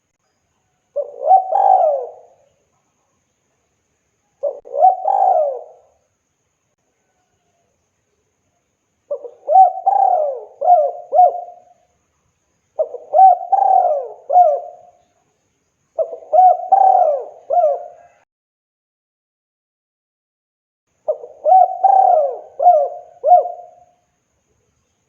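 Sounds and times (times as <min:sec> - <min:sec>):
dove cooing: 0:01.0 - 0:02.5, 0:04.4 - 0:06.0, 0:09.1 - 0:11.8, 0:12.8 - 0:15.0, 0:16.0 - 0:18.2, 0:21.1 - 0:24.0.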